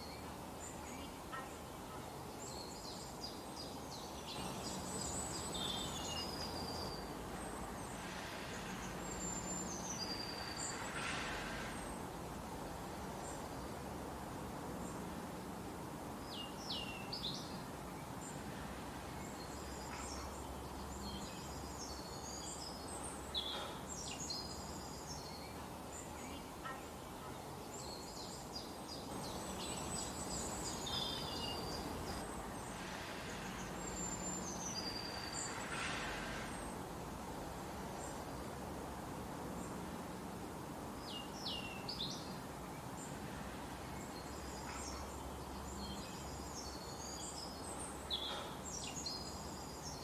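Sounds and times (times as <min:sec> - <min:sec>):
songbirds chirping and whistling: 0:00.0 - 0:12.0, 0:19.2 - 0:36.8
steady background hiss: 0:00.0 - 0:50.0.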